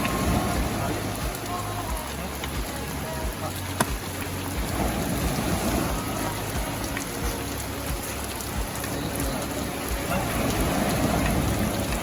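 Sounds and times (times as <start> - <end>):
heavy rain: 0.0 - 12.0.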